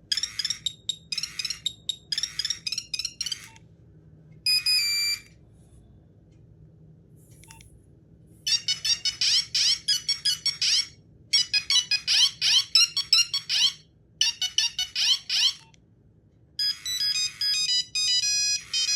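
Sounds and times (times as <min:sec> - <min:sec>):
monophonic ringtone melody: 0:00.0 - 0:03.6, 0:04.5 - 0:05.3, 0:08.5 - 0:15.7, 0:16.6 - 0:18.9
ringtone stepped beeps: 0:00.1 - 0:03.6, 0:04.5 - 0:05.3, 0:08.5 - 0:15.7, 0:16.6 - 0:18.9.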